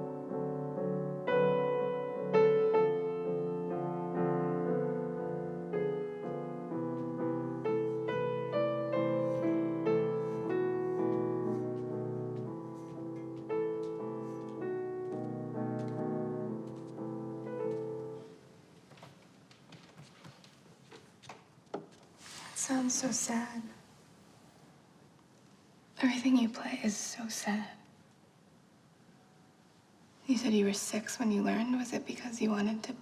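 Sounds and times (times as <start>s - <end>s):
solo piano playing slow melody: 0.0s - 18.4s.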